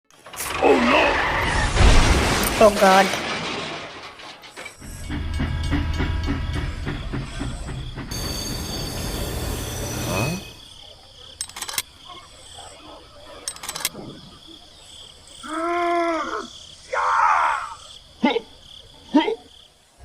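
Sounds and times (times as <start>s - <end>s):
short rattles: 0.1s - 8.2s.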